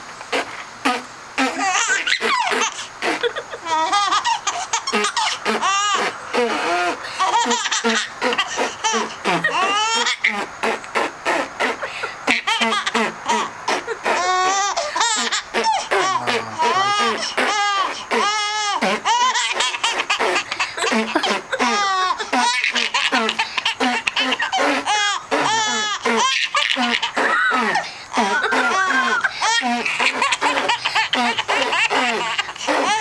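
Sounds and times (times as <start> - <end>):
person making fart noises: 0.3 - 3.5, 4.2 - 33.0
baby laughing: 0.9 - 33.0
person beatboxing: 8.2 - 11.9, 15.2 - 19.0, 20.2 - 30.2.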